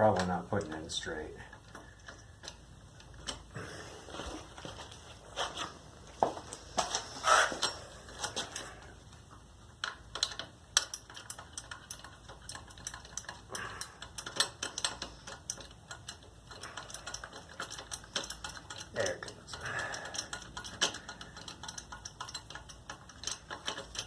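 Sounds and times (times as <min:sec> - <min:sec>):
ratchet wrench clicking: 0:09.8 - 0:24.0.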